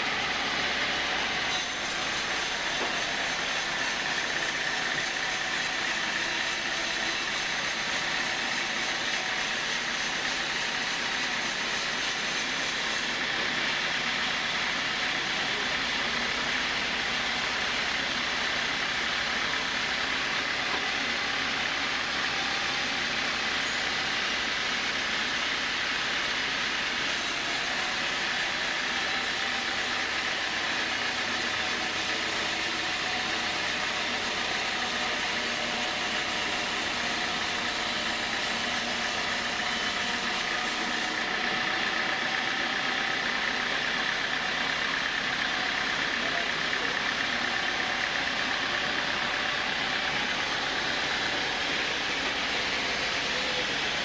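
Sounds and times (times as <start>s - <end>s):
sawmill saw hissing: 0.0s - 54.0s.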